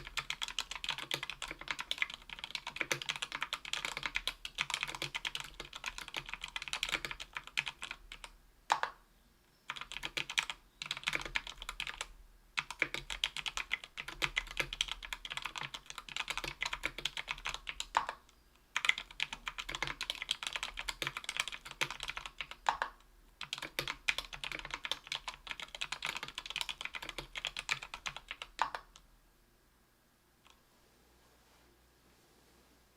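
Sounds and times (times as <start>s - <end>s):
mechanical keyboard typing: 0.0s - 9.0s, 9.7s - 18.2s, 18.8s - 29.0s.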